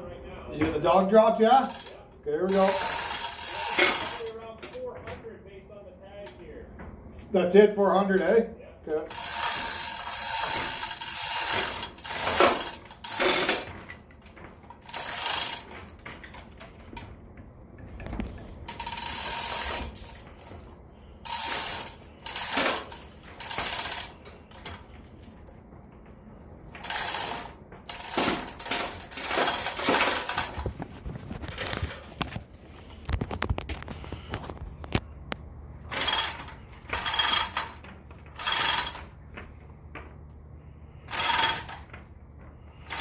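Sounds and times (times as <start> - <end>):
hand ratchet clicking: 1.6 - 4.4, 9.1 - 14.0, 14.7 - 17.1, 18.7 - 24.8, 26.8 - 30.6, 35.9 - 39.1, 41.1 - 41.9.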